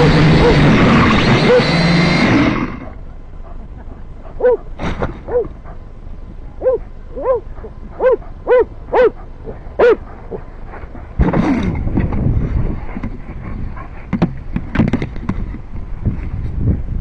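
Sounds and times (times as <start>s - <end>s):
dog barking: 0.0s - 0.6s, 1.5s - 1.7s, 4.4s - 5.8s, 6.6s - 10.4s.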